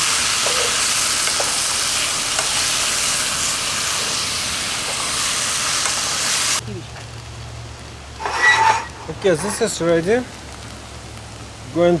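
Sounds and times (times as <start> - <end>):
vegetables sizzling in a pan: 0.0 - 7.2.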